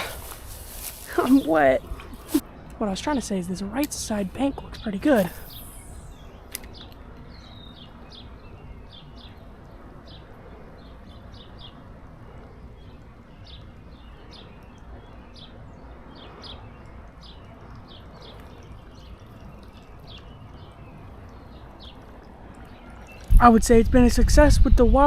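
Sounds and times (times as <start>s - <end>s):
bird chirping: 4.0s - 23.4s.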